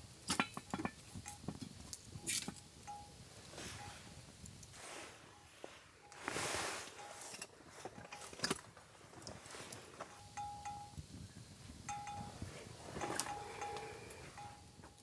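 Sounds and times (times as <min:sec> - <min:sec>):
light clinks and taps: 0:10.0 - 0:11.1, 0:11.8 - 0:12.4.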